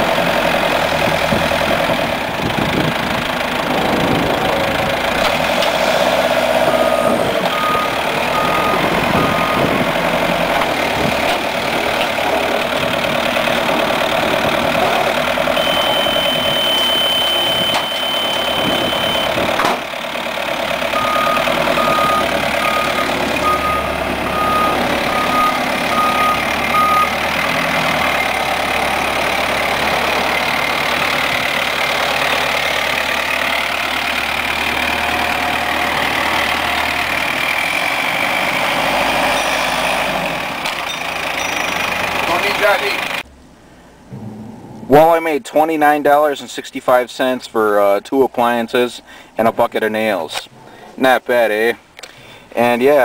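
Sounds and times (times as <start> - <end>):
engine running: 0.0 - 45.5
reversing alarm beeping: 6.9 - 9.9, 15.5 - 19.4, 20.9 - 27.2
steady high tone: 14.8 - 19.4, 44.1 - 46.1.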